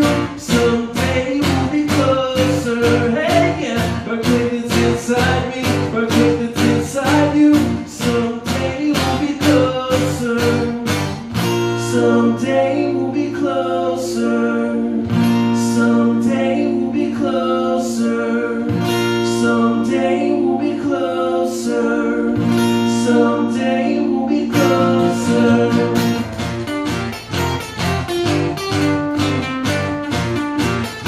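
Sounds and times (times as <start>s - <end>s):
acoustic guitar strumming: 0.0s - 31.0s.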